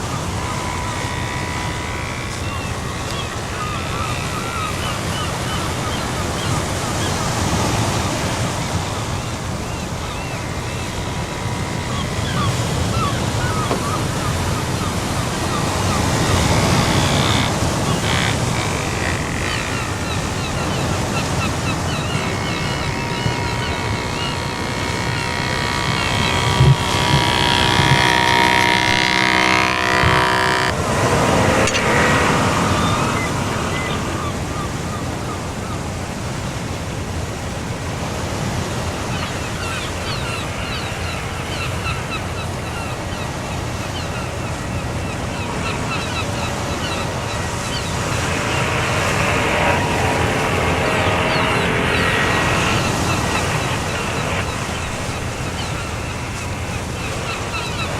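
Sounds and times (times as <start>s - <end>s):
electric motor whining: 0.0s - 36.1s, 37.2s - 57.9s
wind buffeting microphone: 0.0s - 36.4s.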